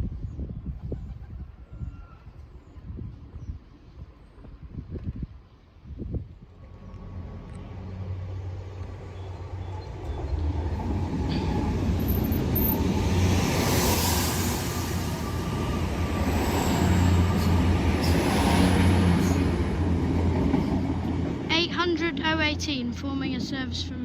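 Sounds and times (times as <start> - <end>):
train wheel and rail noise: 1.8 - 24.0
train engine drone: 5.5 - 24.0.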